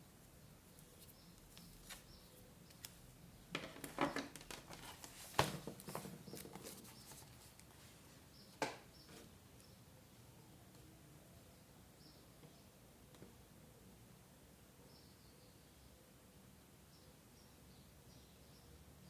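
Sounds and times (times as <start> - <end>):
paper rustling: 3.8 - 7.8.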